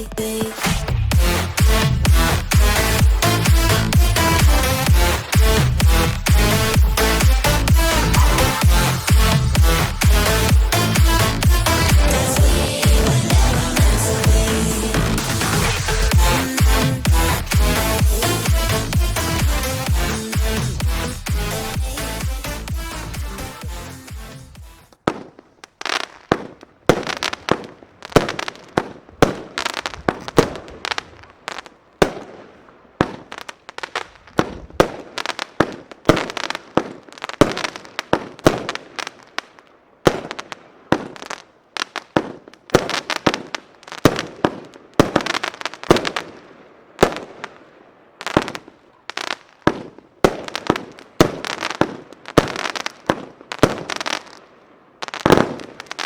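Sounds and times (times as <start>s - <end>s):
firework battery firing shots: 55.1s - 56.0s.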